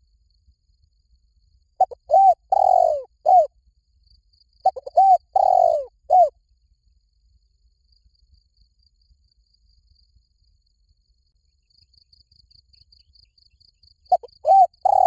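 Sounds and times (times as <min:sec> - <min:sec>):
dove cooing: 0:01.8 - 0:03.5, 0:04.6 - 0:06.3, 0:14.1 - 0:15.0.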